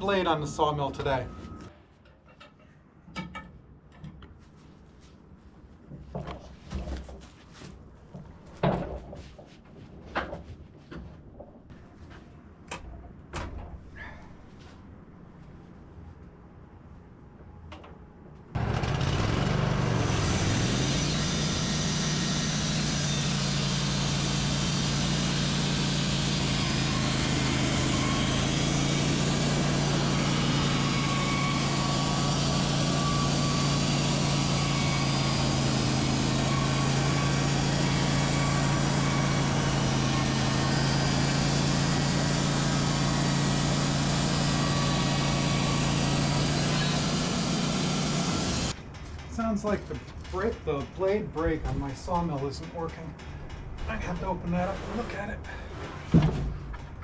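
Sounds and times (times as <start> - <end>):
sawmill engine running: 18.6 - 55.9.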